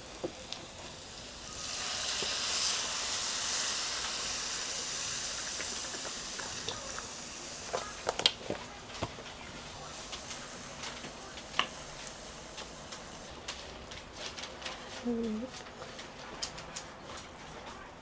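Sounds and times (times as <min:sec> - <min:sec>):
broth sizzling in a hot pan: 0:00.0 - 0:13.9.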